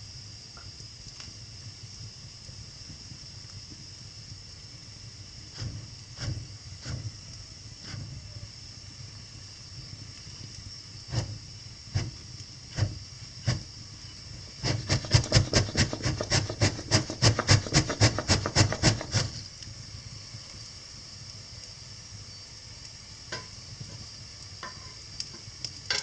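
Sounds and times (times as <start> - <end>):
scraping strokes against wood: 5.5 - 7.1, 11.1 - 13.7, 14.6 - 19.5.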